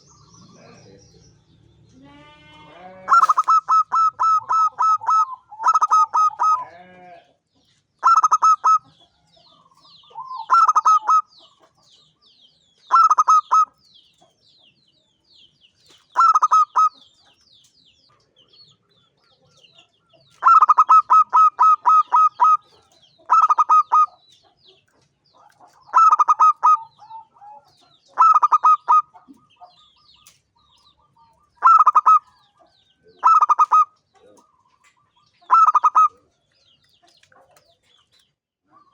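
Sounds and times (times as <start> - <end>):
small birds chirping: 0.0 - 38.9
dove staccato cooing: 3.0 - 6.7, 8.0 - 9.0, 10.0 - 11.3, 12.9 - 13.7, 16.2 - 17.0, 20.4 - 24.2, 25.4 - 30.4, 31.1 - 32.4, 33.2 - 36.2.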